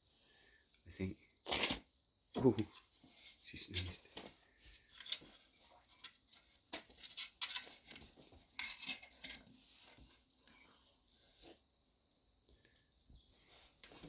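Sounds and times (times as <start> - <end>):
cat scratching and rustling toy: 2.7 - 11.6.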